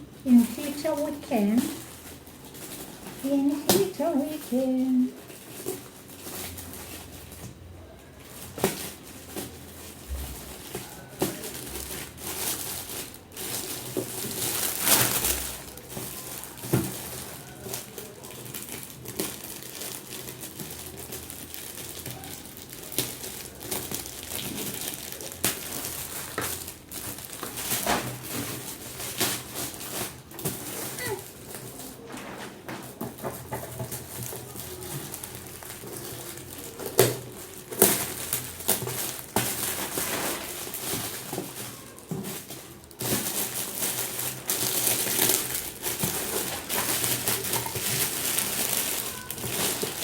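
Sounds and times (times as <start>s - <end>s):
gift wrapping crinkling: 0.0s - 50.0s.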